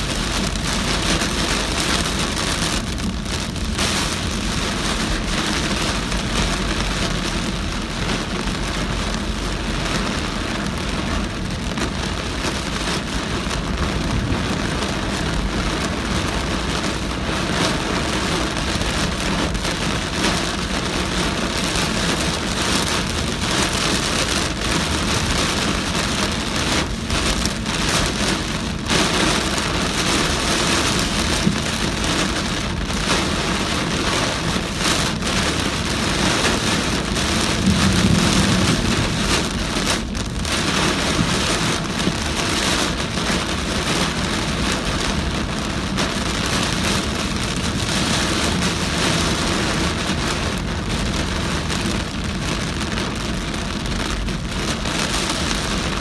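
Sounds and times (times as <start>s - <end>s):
heavy rain on a car: 0.0s - 56.0s
tyre and road noise: 0.0s - 56.0s.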